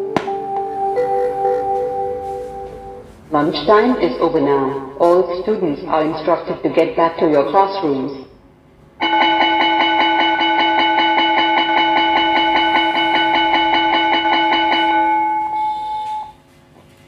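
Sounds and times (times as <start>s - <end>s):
school bell ringing rapidly: 9.0s - 16.4s.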